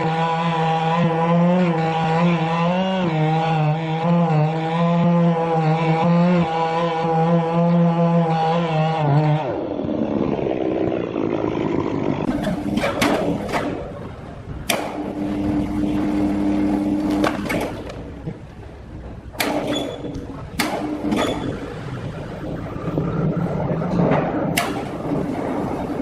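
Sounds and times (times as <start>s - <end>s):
sawmill machinery humming: 12.3s - 21.9s.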